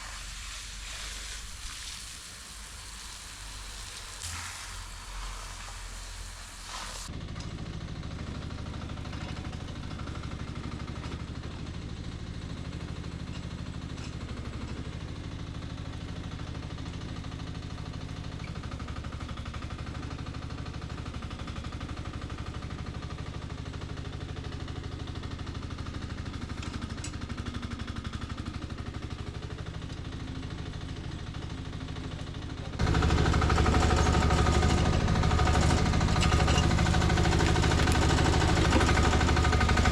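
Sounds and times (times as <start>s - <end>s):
excavator engine running: 0.0s - 7.1s, 26.2s - 39.9s.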